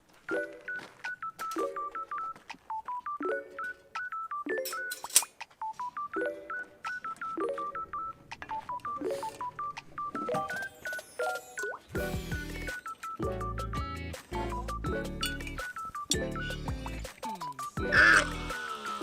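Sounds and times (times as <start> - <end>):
electronic background music: 0.4 - 19.0.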